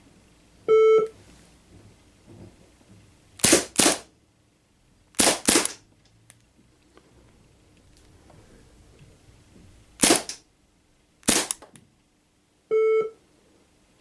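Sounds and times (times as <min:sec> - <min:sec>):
bb pistol shots: 0:03.4 - 0:04.1, 0:05.2 - 0:05.8, 0:10.0 - 0:10.4, 0:11.2 - 0:11.6.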